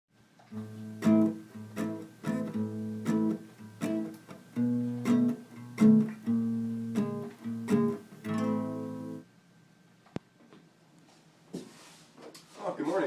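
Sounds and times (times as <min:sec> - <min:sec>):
strummed acoustic guitar: 0:00.5 - 0:09.2.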